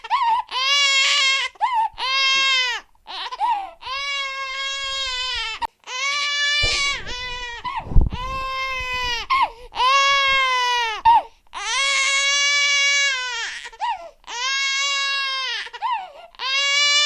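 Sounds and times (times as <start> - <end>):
low bump: 6.6 - 9.5
baby crying: 9.8 - 17.0.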